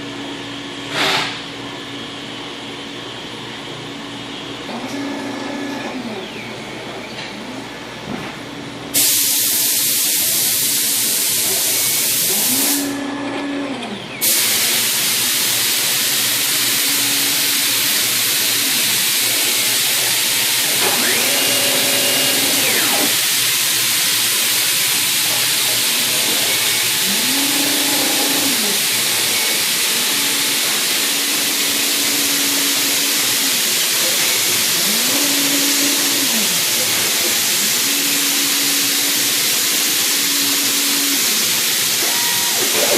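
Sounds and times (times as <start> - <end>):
cnc router hissing: 4.2 - 7.0, 9.0 - 42.9
stepper motors whining: 16.6 - 24.0, 24.9 - 42.9.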